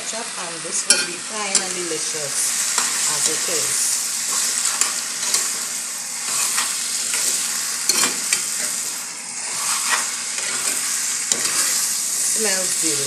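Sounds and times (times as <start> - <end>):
food sizzling in a pan: 0.0 - 13.0
spoon scraping and knocking pan: 0.9 - 1.9, 2.6 - 3.6, 4.2 - 12.2
spoon stirring food: 2.5 - 3.3, 4.1 - 12.1.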